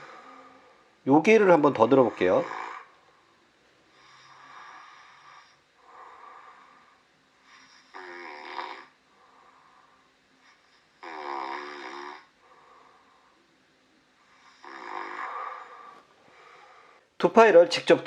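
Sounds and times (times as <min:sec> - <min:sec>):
man snoring: 0:01.9 - 0:02.9, 0:04.0 - 0:06.8, 0:07.5 - 0:09.0, 0:11.0 - 0:12.3, 0:14.3 - 0:16.0.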